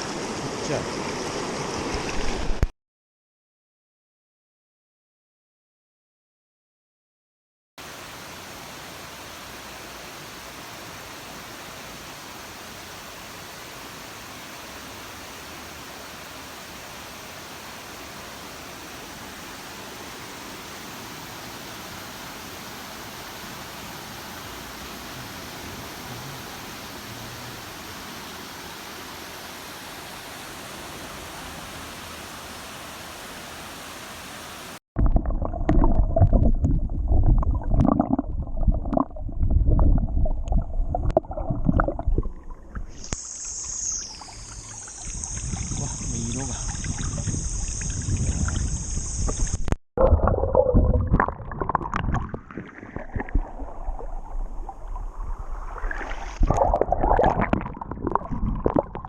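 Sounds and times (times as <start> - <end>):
flowing river water: 0.0 - 2.7, 7.8 - 34.8, 41.1 - 49.6, 50.2 - 59.0.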